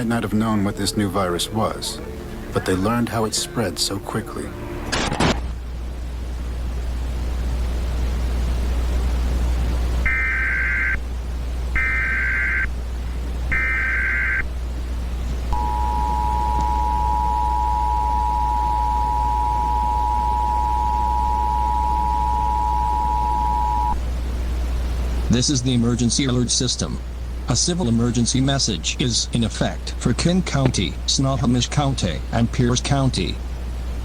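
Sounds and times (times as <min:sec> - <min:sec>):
warbling data tones: 0:13.5 - 0:14.4, 0:15.5 - 0:24.0
two-tone attention signal: 0:15.6 - 0:24.0.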